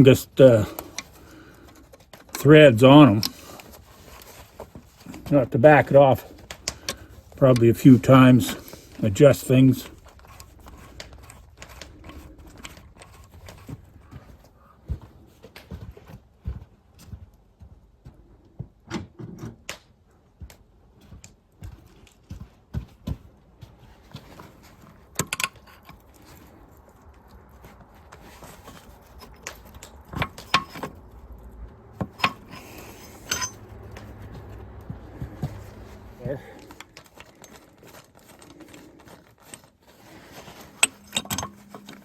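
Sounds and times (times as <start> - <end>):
hand tools clinking on steel: 0.0 - 13.7, 28.3 - 31.1, 32.0 - 34.6, 35.4 - 42.0.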